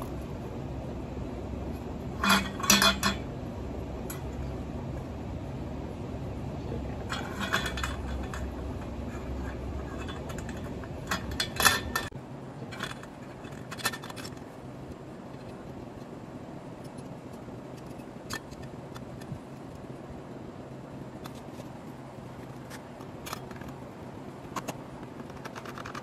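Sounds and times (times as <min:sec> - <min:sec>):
low steady hum: 0:00.0 - 0:26.0
metallic clinks and scrapes: 0:01.6 - 0:05.1, 0:06.7 - 0:14.6, 0:24.5 - 0:26.0.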